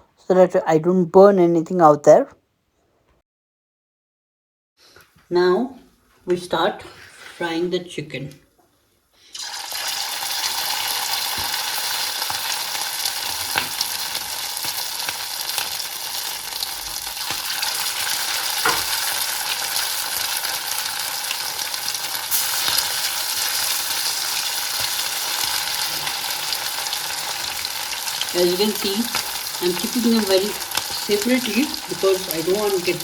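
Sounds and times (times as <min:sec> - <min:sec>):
chicken sizzling in hot oil: 0:09.2 - 0:33.0
oil popping and crackling: 0:09.4 - 0:33.0
utensil scraping pan: 0:18.6 - 0:19.2.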